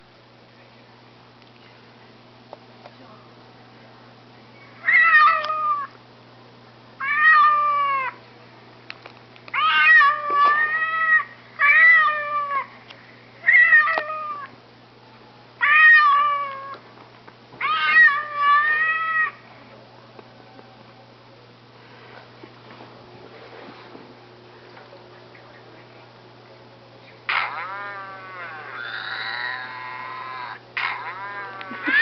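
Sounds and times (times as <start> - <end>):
cat meowing: 4.8 - 5.9, 9.6 - 12.6, 15.6 - 16.8, 17.6 - 19.4.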